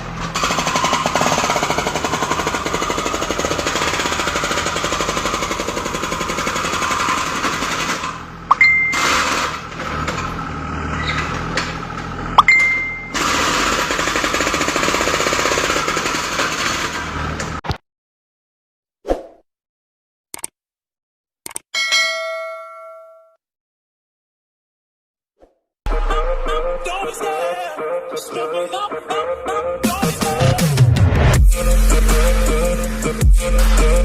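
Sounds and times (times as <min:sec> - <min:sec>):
diesel engine clatter: 0:00.0 - 0:17.6
sharp click: 0:20.3 - 0:20.6, 0:21.4 - 0:21.7.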